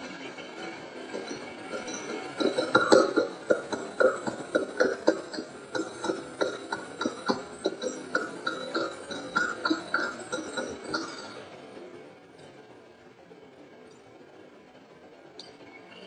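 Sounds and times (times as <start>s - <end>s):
short throaty pulses: 0.0s - 11.6s.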